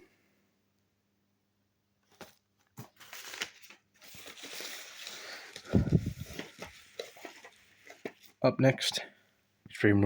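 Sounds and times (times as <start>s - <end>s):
packaging rustling and crinkling: 2.0s - 8.5s.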